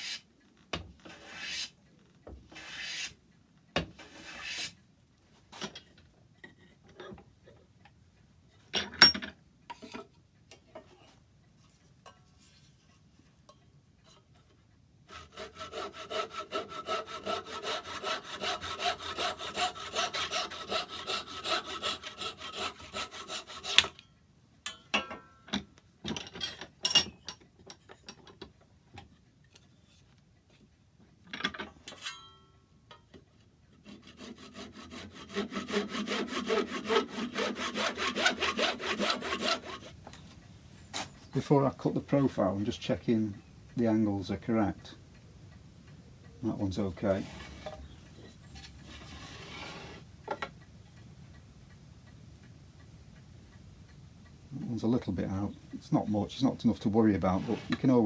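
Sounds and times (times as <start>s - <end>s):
hand saw strokes in wood: 0.0s - 0.3s, 1.1s - 1.8s, 2.5s - 3.2s, 4.0s - 4.8s, 15.1s - 24.0s, 33.8s - 40.0s, 46.5s - 47.8s, 48.6s - 50.0s, 57.1s - 58.0s.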